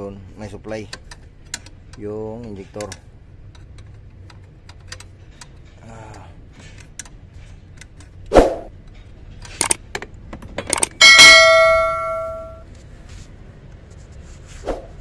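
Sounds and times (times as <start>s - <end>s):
metal tools clicking on fittings: 0.6s - 8.2s, 8.8s - 10.0s.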